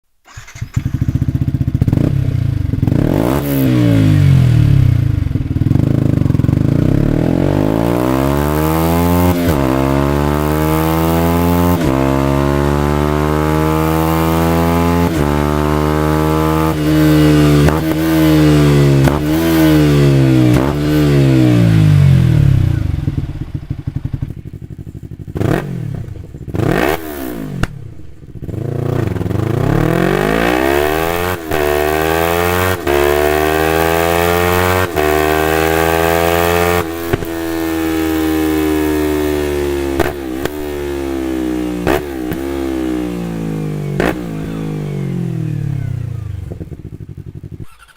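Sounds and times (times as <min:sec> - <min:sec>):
motorcycle engine accelerating: 0:00.2 - 0:47.9
motorcycle engine rev blips: 0:00.3 - 0:47.9.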